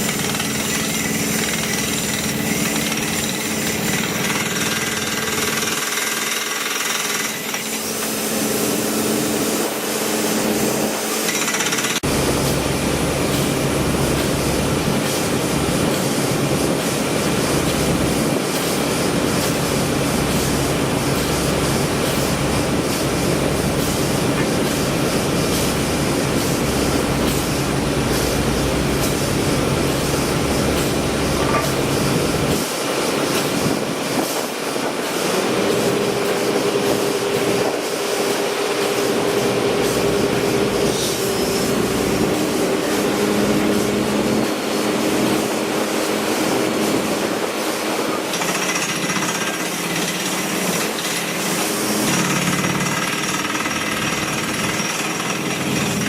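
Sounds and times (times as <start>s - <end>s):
jackhammer hammering: 0.0s - 8.1s, 11.2s - 12.2s, 48.2s - 56.0s.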